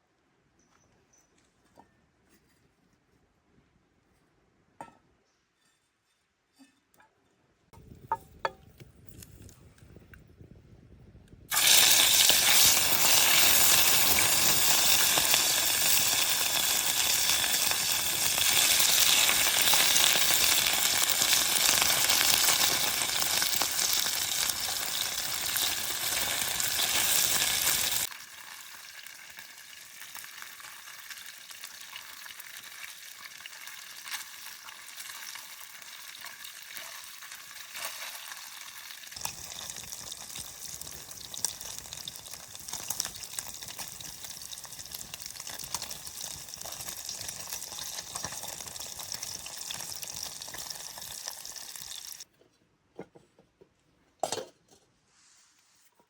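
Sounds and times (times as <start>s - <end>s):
food frying in hot oil: 11.5s - 52.3s.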